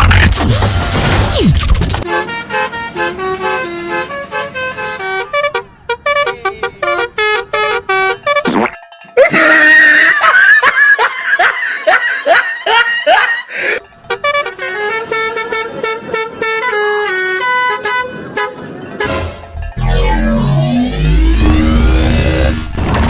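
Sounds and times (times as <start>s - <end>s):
bus air horn playing a tune: 2.0s - 8.7s, 13.8s - 22.8s.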